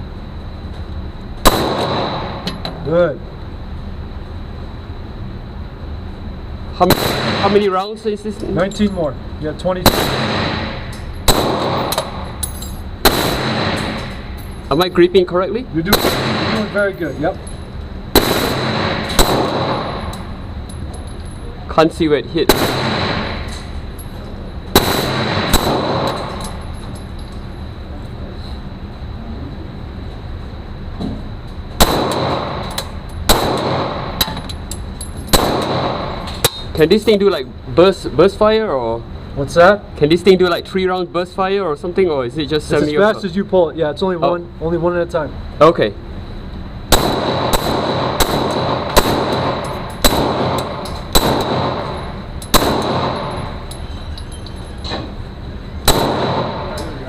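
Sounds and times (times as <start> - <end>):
pistol shots with echo: 1.4 - 2.5, 6.8 - 7.8, 9.8 - 12.2, 13.0 - 14.2, 15.9 - 16.9, 18.1 - 20.2, 22.5 - 23.5, 24.7 - 26.5, 31.8 - 34.4, 35.3 - 36.3, 46.9 - 53.6, 55.8 - 57.0.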